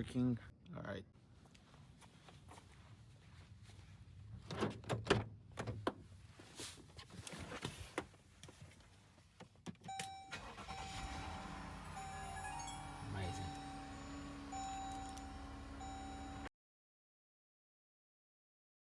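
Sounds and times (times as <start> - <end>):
dashboard warning chime: 9.9 - 16.5.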